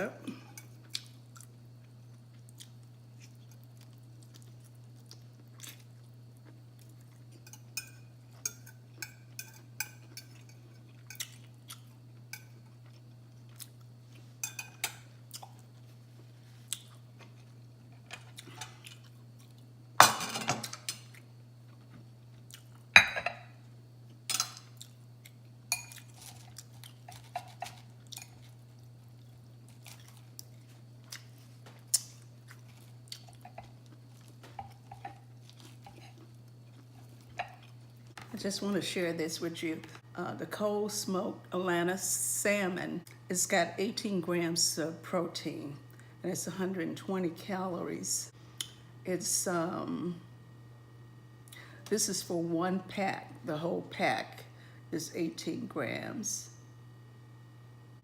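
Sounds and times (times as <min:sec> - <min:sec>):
steady low hum: 0:00.0 - 0:58.0
chewing: 0:02.3 - 0:09.3, 0:21.1 - 0:22.8, 0:24.6 - 0:38.1.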